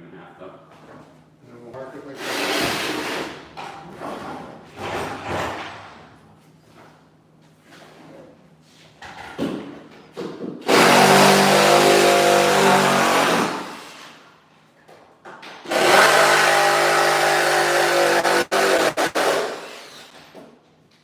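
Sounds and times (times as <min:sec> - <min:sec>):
electric power tool motor: 0:10.7 - 0:14.0, 0:15.7 - 0:20.3.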